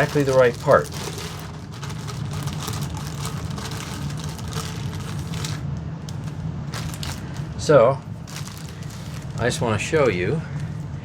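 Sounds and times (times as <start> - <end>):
plastic hose rustling and clicking: 0.0 - 7.5
steady low hum: 0.0 - 11.0.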